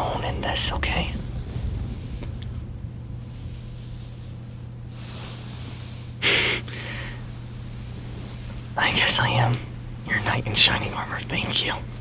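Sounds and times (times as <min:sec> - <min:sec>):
low hum: 0:00.0 - 0:12.0
rain hiss: 0:00.0 - 0:12.0
man breathing out through nose: 0:03.8 - 0:08.6.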